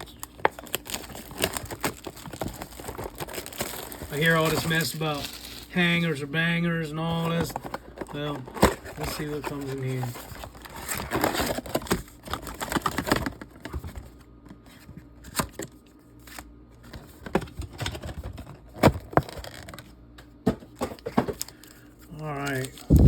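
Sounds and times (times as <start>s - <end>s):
packaging crinkling and tearing: 0.0s - 5.8s, 7.1s - 14.0s, 18.9s - 19.8s, 21.3s - 23.0s.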